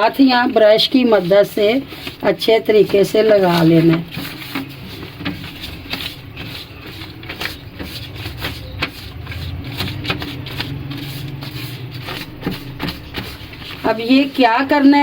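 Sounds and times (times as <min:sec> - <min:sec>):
brush rustling on paper: 0:00.0 - 0:15.0.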